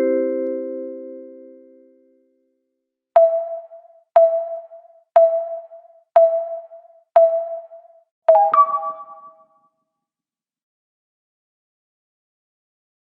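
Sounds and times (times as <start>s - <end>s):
electronic countdown beeps: 3.2s - 9.6s.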